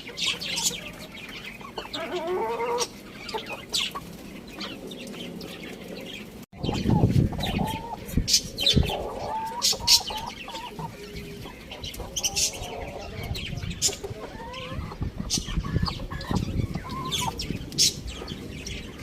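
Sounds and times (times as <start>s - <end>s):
chickens clucking: 0.0s - 19.0s.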